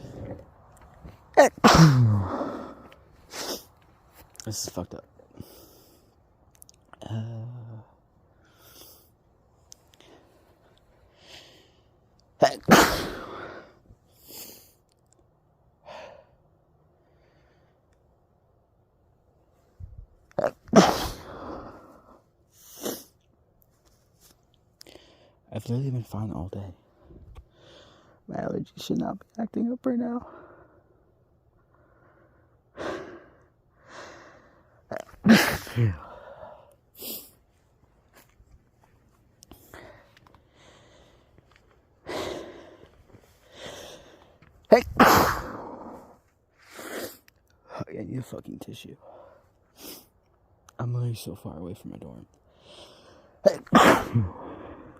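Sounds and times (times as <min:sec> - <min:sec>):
person sneezing: 0:01.4 - 0:03.7, 0:12.4 - 0:13.4, 0:20.4 - 0:21.8, 0:34.9 - 0:36.3, 0:44.7 - 0:46.1, 0:53.4 - 0:54.6
breathy gasps: 0:02.0 - 0:03.5
person breathing: 0:02.1 - 0:04.2, 0:09.8 - 0:12.0, 0:24.8 - 0:25.4, 0:26.8 - 0:28.3, 0:30.3 - 0:34.9, 0:35.8 - 0:37.5, 0:39.5 - 0:44.7, 0:49.0 - 0:50.1, 0:52.5 - 0:53.4, 0:54.2 - 0:54.9
person sniffing: 0:44.8 - 0:47.2.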